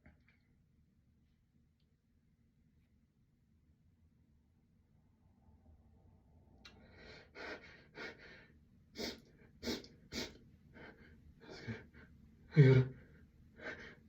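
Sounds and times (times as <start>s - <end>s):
person breathing quickly: 6.8s - 14.0s
person gasping: 6.9s - 14.0s.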